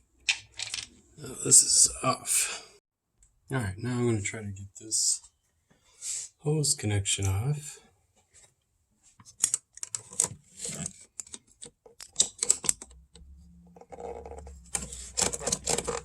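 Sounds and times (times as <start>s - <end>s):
plastic hose clicks and rattles: 9.4s - 16.0s.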